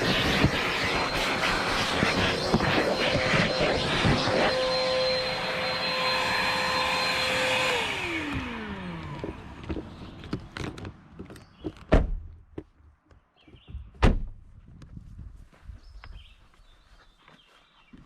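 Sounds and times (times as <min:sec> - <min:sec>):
grit crackling through nozzle: 0:00.0 - 0:04.7
motor winding down: 0:00.0 - 0:09.8
vacuum cleaner running: 0:00.0 - 0:10.2.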